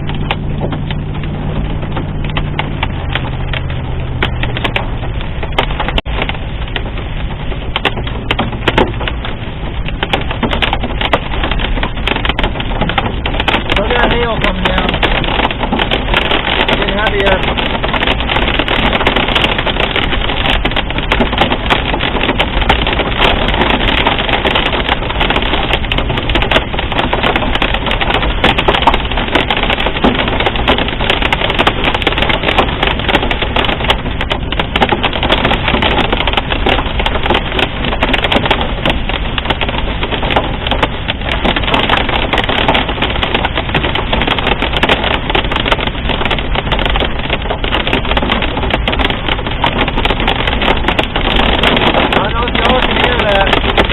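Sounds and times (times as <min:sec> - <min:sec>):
hail clattering on a car: 0:00.0 - 0:53.9
heavy rain on a car: 0:00.0 - 0:53.9
road noise: 0:00.0 - 0:53.9.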